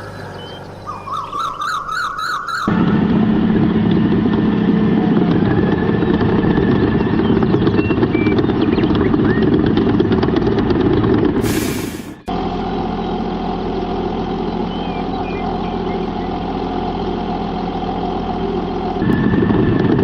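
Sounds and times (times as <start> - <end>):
heavy engine running: 0.0 - 20.0.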